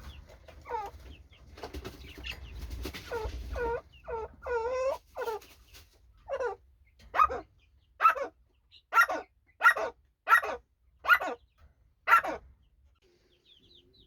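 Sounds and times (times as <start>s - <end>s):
budgerigars chattering: 0.0s - 5.6s, 6.2s - 11.5s, 12.1s - 12.4s.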